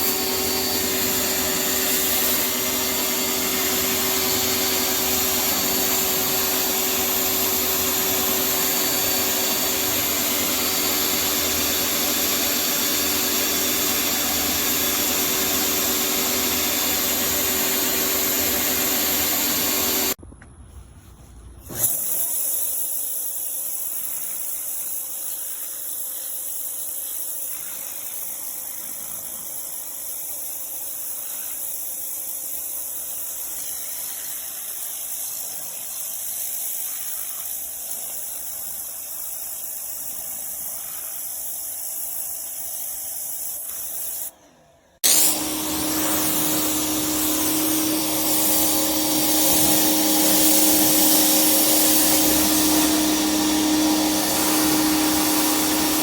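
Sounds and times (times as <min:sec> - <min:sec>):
electric motor and pump humming: 0:00.0 - 0:20.2, 0:45.0 - 0:56.0
pressure washer spraying water: 0:00.0 - 0:20.2, 0:21.7 - 0:44.4, 0:45.0 - 0:56.0.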